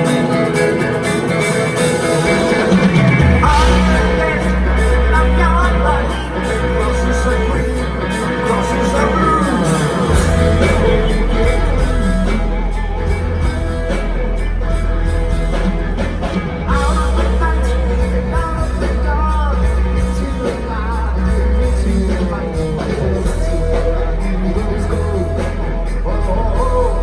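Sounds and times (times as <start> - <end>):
live rock band playing: 0.0 - 27.0
wavering lead melody: 0.0 - 27.0.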